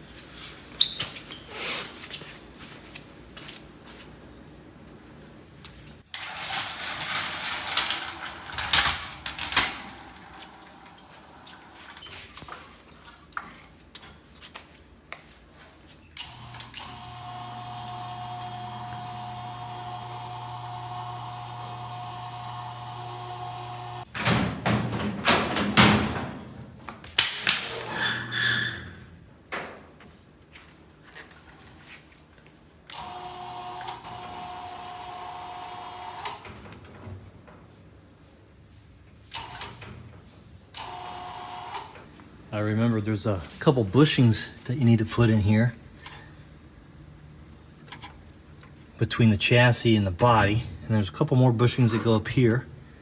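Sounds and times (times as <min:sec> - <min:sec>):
metallic clanks and knocks: 0:06.2 - 0:10.6
electric hoist motor humming: 0:06.2 - 0:12.0, 0:16.2 - 0:24.1, 0:32.9 - 0:37.0, 0:40.7 - 0:42.1.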